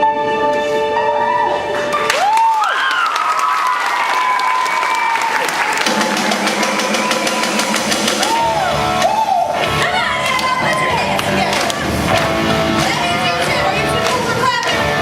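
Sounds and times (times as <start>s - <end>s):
music: 0.0s - 2.8s, 5.8s - 15.0s
audience applauding: 1.9s - 13.1s.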